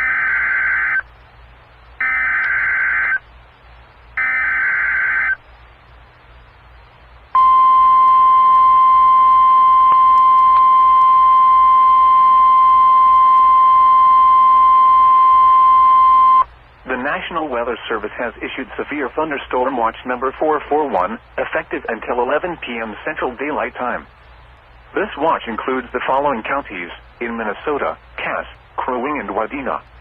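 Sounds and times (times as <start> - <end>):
steady alarm tone: 2.0 - 3.2, 4.2 - 5.4, 7.4 - 16.4.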